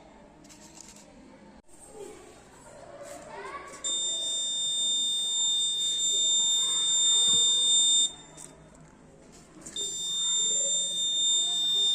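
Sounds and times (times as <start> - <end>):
high-pitched alarm buzzer: 3.9 - 8.5, 9.8 - 11.9.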